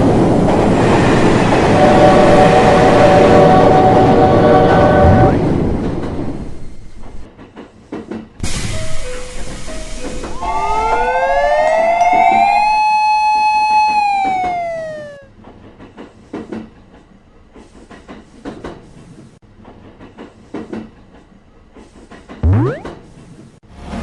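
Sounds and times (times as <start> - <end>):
warbling two-note beeping: 10.5 - 15.3, 22.4 - 23.0.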